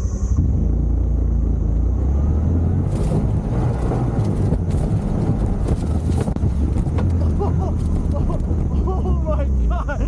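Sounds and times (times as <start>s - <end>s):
wind buffeting microphone: 2.8s - 9.4s
knocks and rattles from bumps: 2.9s - 9.0s.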